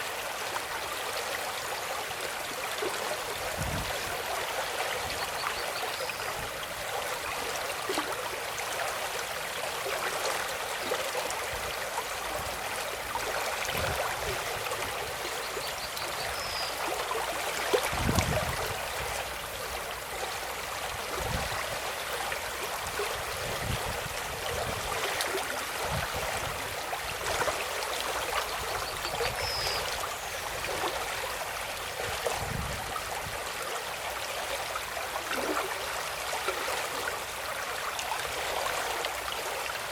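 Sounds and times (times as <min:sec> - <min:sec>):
stream splashing and babbling: 0:00.0 - 0:39.9.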